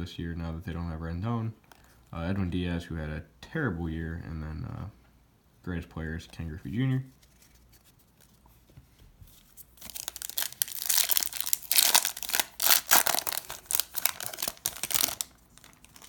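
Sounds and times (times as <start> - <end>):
wrapper tearing and crinkling: 9.7 - 16.0.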